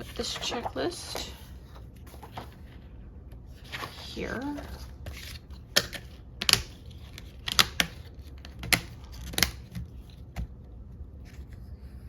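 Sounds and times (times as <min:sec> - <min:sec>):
planner pages clicking on discs: 0:03.6 - 0:10.5.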